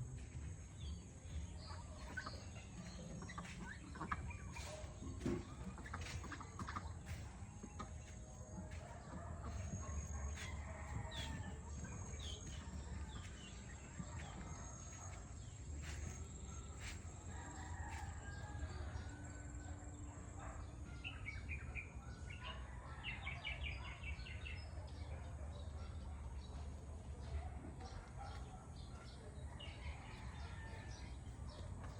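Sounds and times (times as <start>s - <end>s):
farm fowl calling and chirping: 0.2s - 19.6s, 29.1s - 31.9s.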